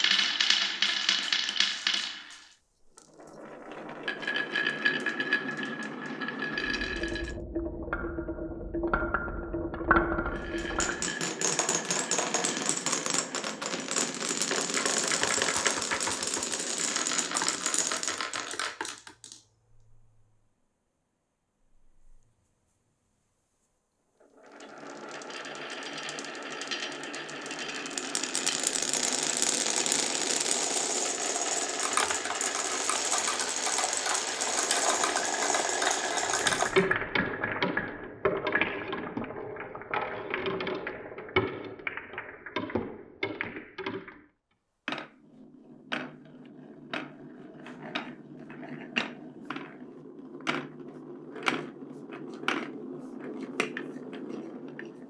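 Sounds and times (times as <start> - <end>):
marbles rattling down wooden run: 0.0 - 19.4, 24.4 - 44.2, 45.9 - 55.0
marbles rolling: 0.0 - 19.5, 24.2 - 44.2, 44.9 - 55.0
single marbles clacking: 4.1 - 19.4, 24.6 - 44.2.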